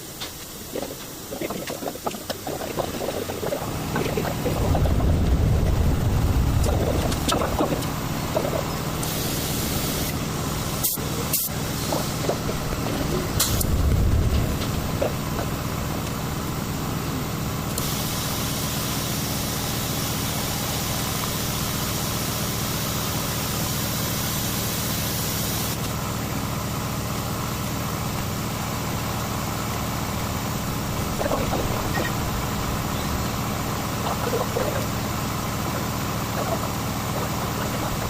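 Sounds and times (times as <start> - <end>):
loud hiss: 0.0 - 17.0, 17.7 - 25.9
engine idling: 0.0 - 38.0.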